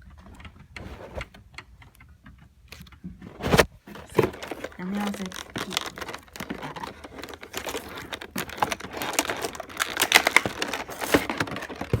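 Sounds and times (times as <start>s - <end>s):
rustling: 0.7s - 1.4s, 3.1s - 12.0s
plastic toy clicks and clatter: 4.4s - 12.0s.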